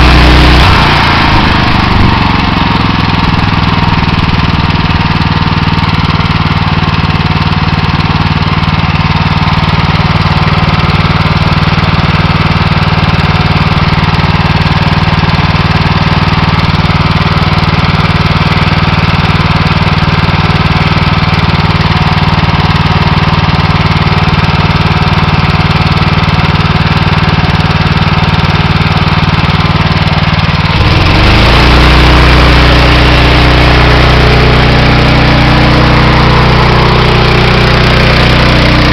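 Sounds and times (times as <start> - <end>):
pressure washer engine running: 0.0 - 38.9.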